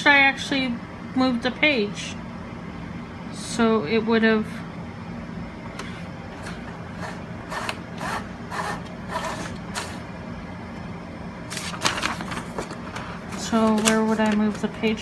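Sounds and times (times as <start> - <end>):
paper rustling: 5.8 - 10.0, 11.5 - 15.0
typewriter clicks: 11.6 - 14.7.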